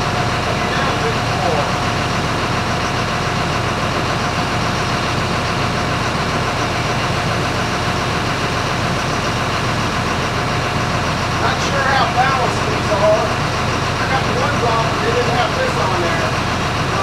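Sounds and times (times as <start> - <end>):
engine idling: 0.0 - 17.0.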